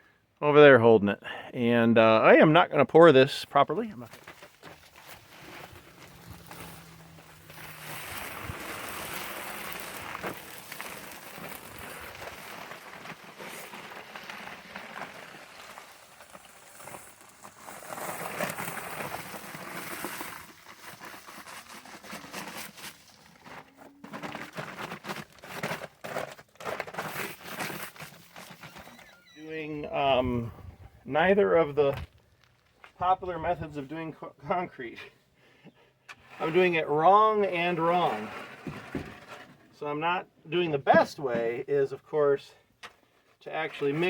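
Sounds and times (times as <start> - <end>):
dry concrete mix pouring: 3.7 - 30.3, 36.3 - 39.8, 43.4 - 44.0
bag crinkling: 4.1 - 29.3.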